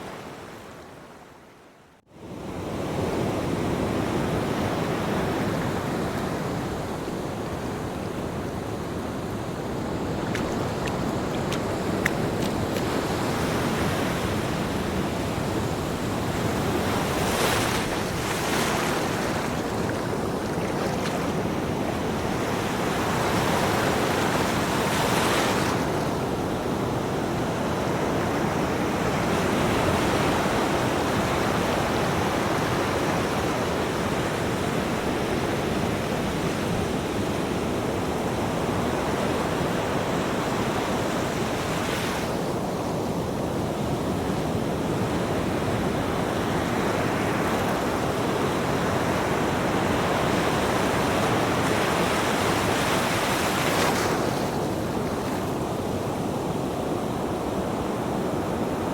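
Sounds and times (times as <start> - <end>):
waves breaking: 8.9 - 26.3, 46.6 - 55.9.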